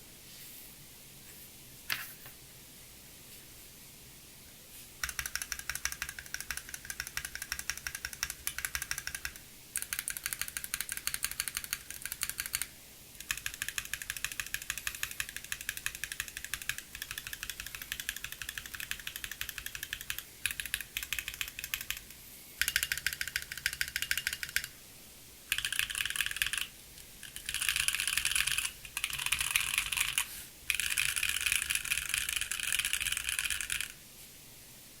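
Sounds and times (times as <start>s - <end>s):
typing on mechanical keyboard: 5.0s - 24.7s, 25.5s - 34.0s.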